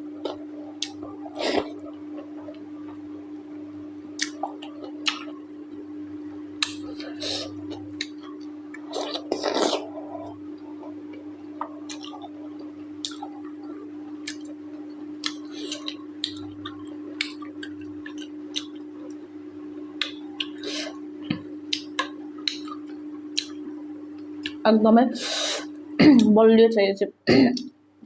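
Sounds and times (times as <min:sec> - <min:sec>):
steady low hum: 0:00.0 - 0:28.0
wet chewing sounds: 0:06.6 - 0:19.2.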